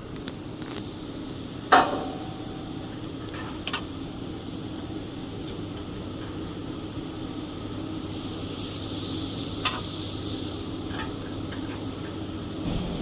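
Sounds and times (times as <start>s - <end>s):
loud high hiss: 8.0s - 10.9s, 12.6s - 13.0s
low machine hum: 12.2s - 13.0s.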